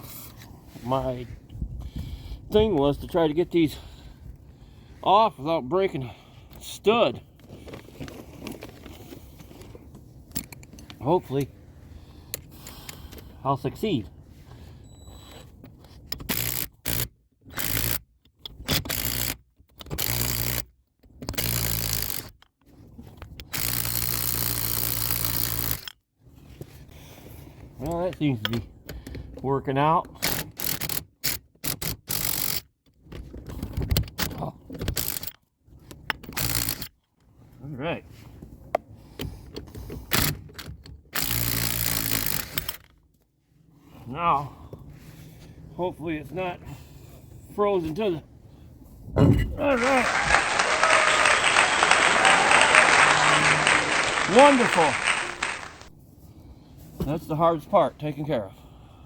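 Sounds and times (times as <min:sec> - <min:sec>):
power tool motor bursts: 0:21.4 - 0:22.3, 0:41.2 - 0:42.7.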